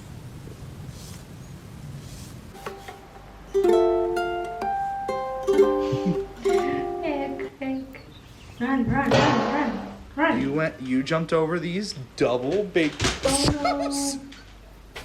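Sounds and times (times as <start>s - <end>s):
low steady rumbling: 0.0s - 2.6s, 6.7s - 12.2s
plucked-string background music: 2.6s - 7.9s.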